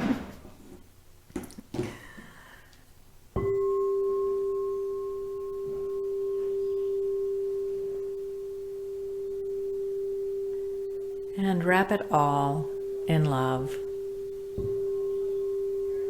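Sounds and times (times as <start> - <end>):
singing bowl ringing: 3.4 - 16.0.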